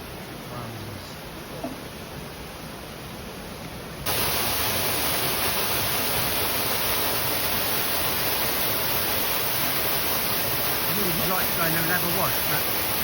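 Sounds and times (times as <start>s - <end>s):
waterfall rushing: 4.1s - 13.0s.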